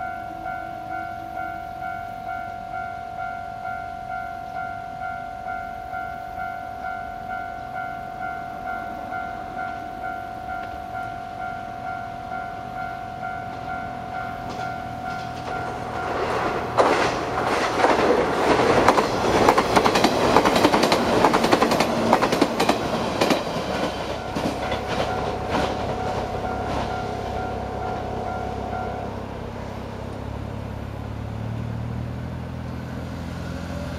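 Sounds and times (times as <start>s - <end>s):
level crossing warning bell: 0.0s - 31.0s
train wheels clattering over joints: 14.4s - 28.0s.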